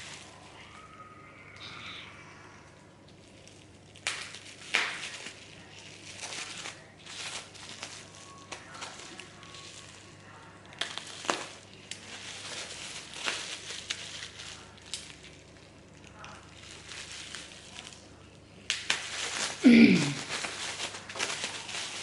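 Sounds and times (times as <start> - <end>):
packaging crinkling and rustling: 0.0 - 1.0, 3.0 - 22.0
sharp crackles of wrapping: 0.0 - 2.0, 2.7 - 22.0.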